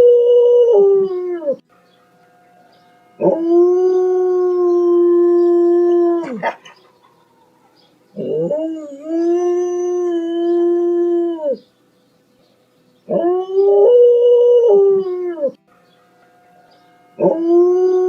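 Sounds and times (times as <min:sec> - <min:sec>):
dog howling: 0:03.2 - 0:11.6, 0:13.1 - 0:15.6, 0:16.2 - 0:18.0
dog yelp: 0:06.2 - 0:08.5.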